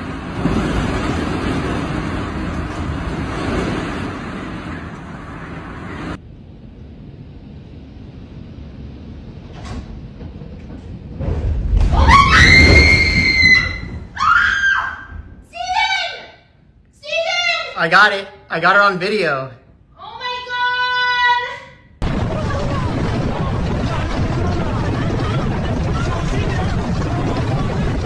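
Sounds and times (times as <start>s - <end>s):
loud deep rumble: 0.0s - 14.3s, 22.0s - 28.0s
steady noisy roar: 22.0s - 28.0s.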